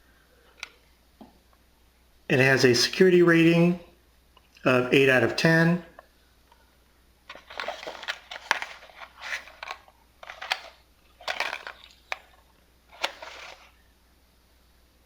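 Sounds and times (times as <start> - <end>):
cardboard packaging rustling: 7.3 - 13.8.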